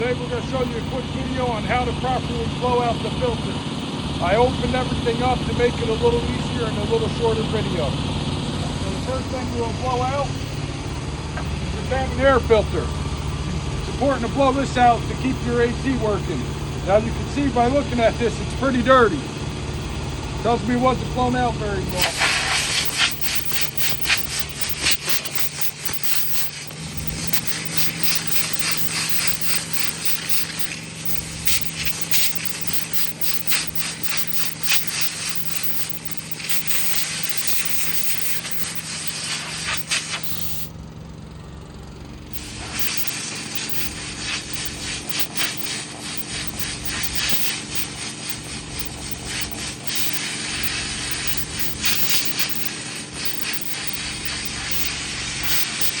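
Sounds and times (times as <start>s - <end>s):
steady engine hum: 0.0s - 56.0s
compressed air blowgun hissing: 21.9s - 40.7s, 42.3s - 56.0s.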